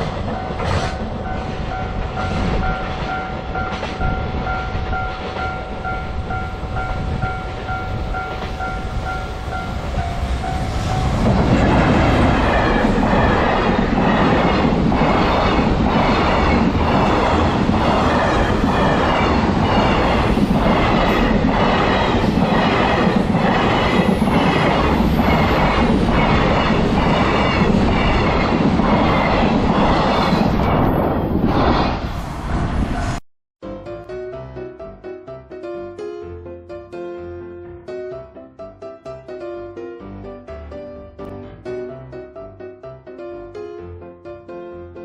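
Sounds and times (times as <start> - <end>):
train rumble: 0.0 - 33.2.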